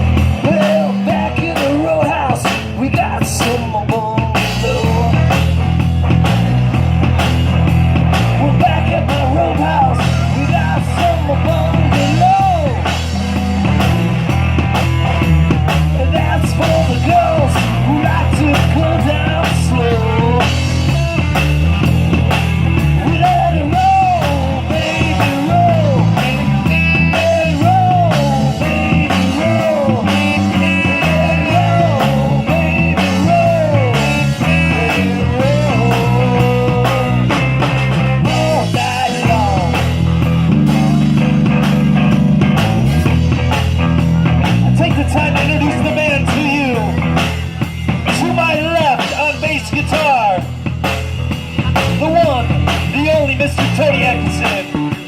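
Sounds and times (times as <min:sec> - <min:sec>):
drum kit beat: 0:00.0 - 0:55.0
live blues rock band: 0:00.0 - 0:55.0
walking bass line: 0:00.0 - 0:55.0.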